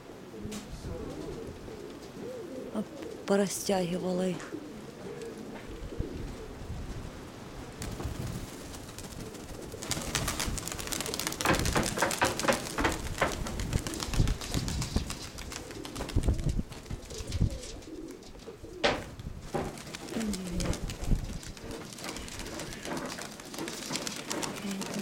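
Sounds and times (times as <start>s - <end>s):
pigeons cooing: 0.0s - 6.8s, 7.8s - 25.0s
rustling: 7.8s - 25.0s
sharp knocks: 11.4s - 13.4s, 18.8s - 19.8s.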